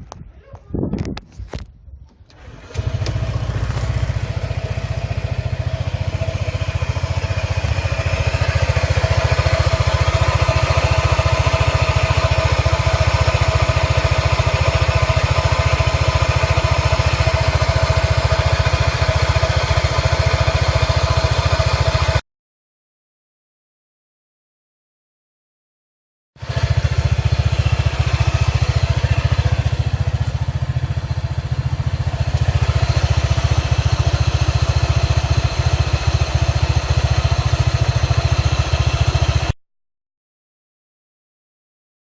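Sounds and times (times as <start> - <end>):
scooter engine idling: 2.3 - 22.2, 26.4 - 39.6
steady drivetrain tone: 2.3 - 22.2, 26.4 - 39.6.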